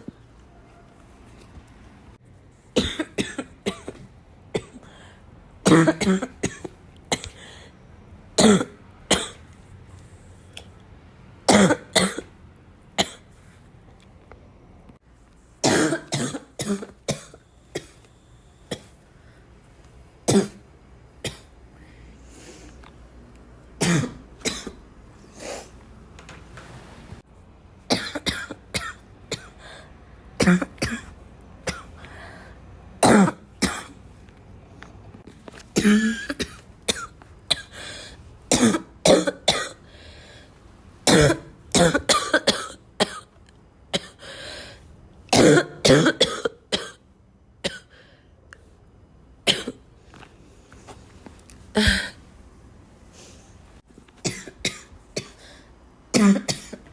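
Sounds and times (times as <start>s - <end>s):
person coughing: 2.8s - 4.9s, 5.6s - 7.4s, 8.4s - 9.4s, 11.5s - 12.3s, 15.6s - 18.0s, 20.3s - 20.6s, 23.8s - 24.8s, 27.9s - 29.8s, 30.4s - 31.9s, 33.0s - 34.0s, 35.8s - 37.8s, 38.5s - 39.8s, 41.1s - 43.3s, 45.3s - 47.0s, 49.5s - 49.8s, 51.7s - 52.2s, 54.2s - 56.9s.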